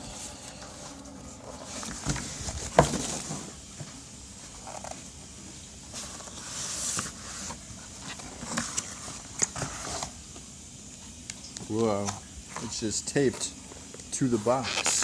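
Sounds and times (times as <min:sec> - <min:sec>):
cardboard rustling and scraping: 0:00.0 - 0:05.2, 0:05.9 - 0:10.2.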